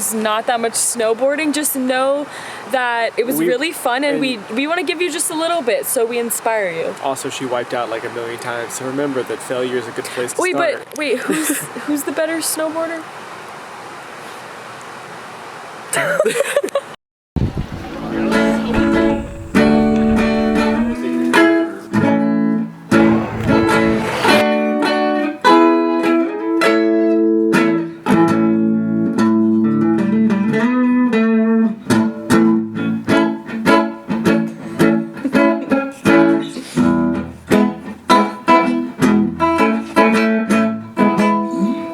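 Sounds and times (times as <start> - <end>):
plucked guitar tune: 17.4 - 41.9.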